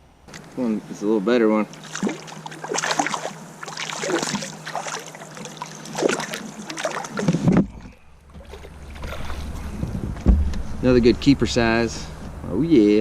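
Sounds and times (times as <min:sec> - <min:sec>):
water splashing: 0:01.7 - 0:10.5
wind rumble on microphone: 0:08.7 - 0:13.0
knocks on a kayak: 0:09.9 - 0:10.7.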